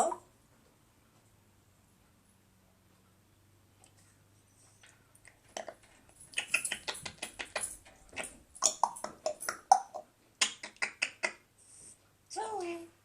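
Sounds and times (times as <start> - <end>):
parrot clicking and chirping: 5.3 - 11.5.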